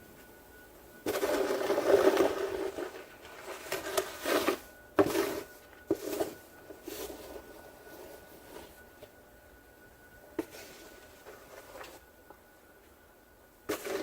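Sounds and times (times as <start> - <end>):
snow shovel scraping snow: 1.0 - 7.4, 13.7 - 14.0.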